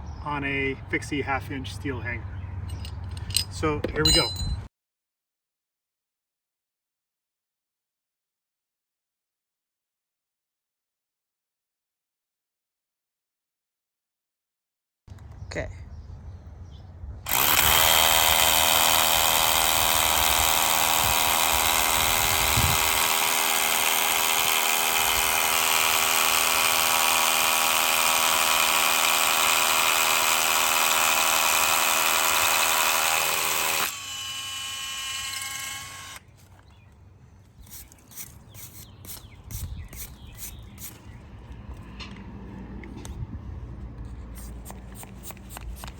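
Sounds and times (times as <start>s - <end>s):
power drill boring into rock: 17.3s - 36.3s.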